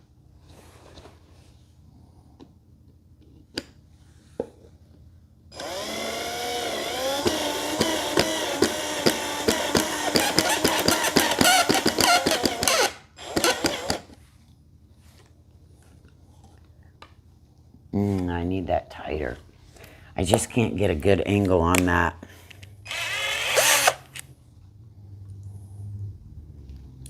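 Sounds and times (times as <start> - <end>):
power drill driving screw: 5.5 - 14.2, 22.9 - 24.3.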